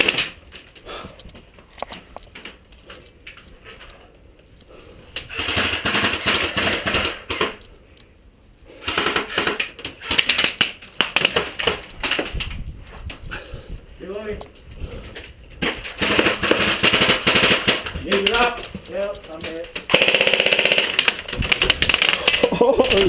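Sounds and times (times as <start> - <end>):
airsoft guns firing bursts: 5.3 - 7.6, 8.8 - 11.8, 16.0 - 18.4, 19.9 - 23.0.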